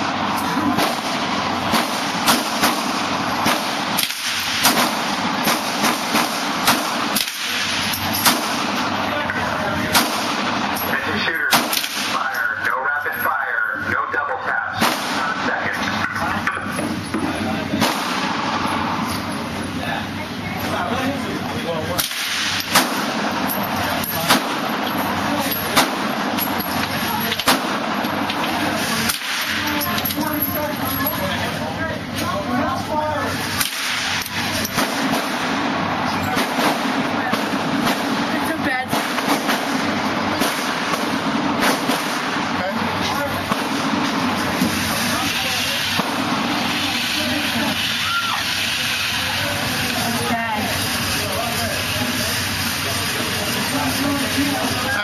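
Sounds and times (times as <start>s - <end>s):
gunshots: 0.0s - 9.1s, 9.8s - 12.4s, 14.7s - 16.0s, 17.7s - 18.9s, 22.0s - 29.7s, 33.5s - 46.8s
range noise hiss: 0.0s - 55.0s
rifle shots: 0.7s - 9.0s, 9.9s - 10.8s, 11.5s - 12.3s, 14.8s - 15.5s, 17.8s - 18.7s, 22.0s - 23.5s, 24.3s - 25.0s, 25.8s - 26.4s, 27.4s - 28.2s, 29.1s - 29.7s, 33.6s - 42.6s, 43.4s - 44.2s.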